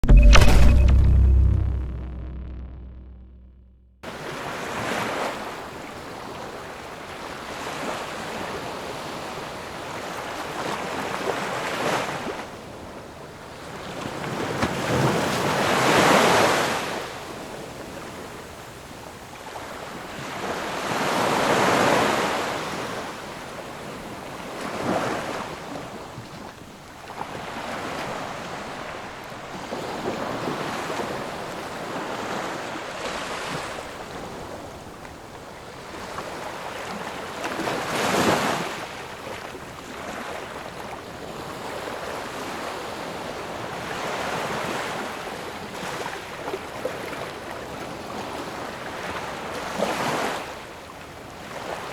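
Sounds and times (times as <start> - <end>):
ocean waves breaking on shore: 19.6 - 25.9, 26.8 - 47.4.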